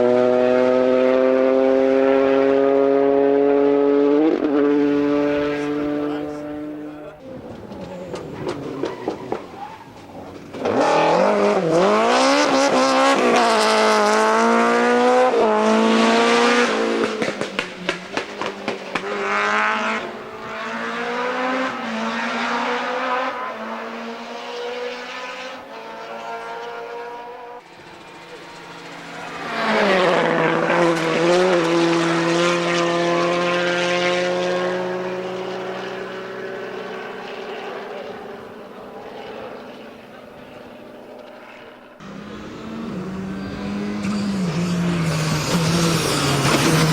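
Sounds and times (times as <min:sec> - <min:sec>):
rally car engine revving: 0:00.0 - 0:46.9
exhaust popping and crackling: 0:06.9 - 0:11.8, 0:16.8 - 0:20.2.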